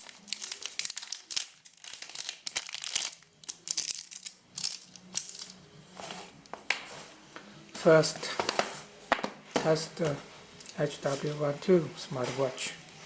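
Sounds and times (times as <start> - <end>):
plastic packaging crinkling: 0.0 - 6.3.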